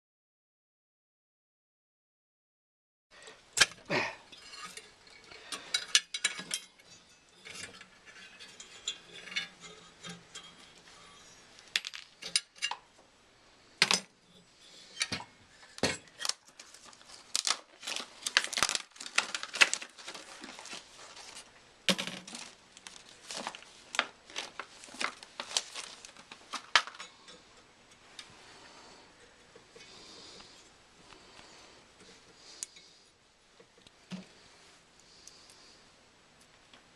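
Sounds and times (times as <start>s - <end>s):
metal parts and tools clattering: 3.6s - 12.9s
rustling: 14.3s - 33.0s.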